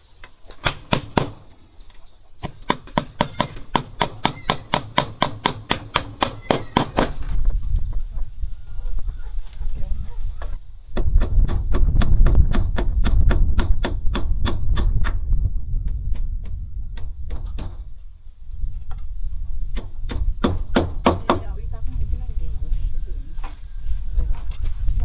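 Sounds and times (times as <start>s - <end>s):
hammer blows: 2.4s - 7.4s.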